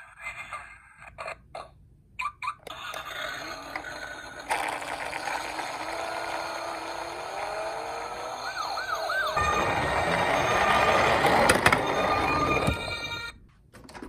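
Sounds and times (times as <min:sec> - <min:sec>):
toy car wheels whirring: 0:02.6 - 0:13.2
faint rising hum: 0:05.4 - 0:13.1.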